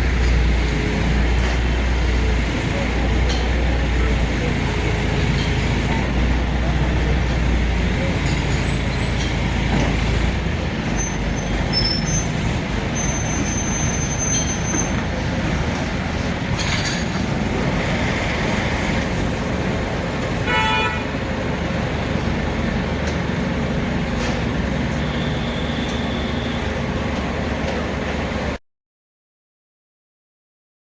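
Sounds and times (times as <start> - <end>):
crane diesel engine running: 0.0 - 28.6
short horn toot: 25.0 - 26.8.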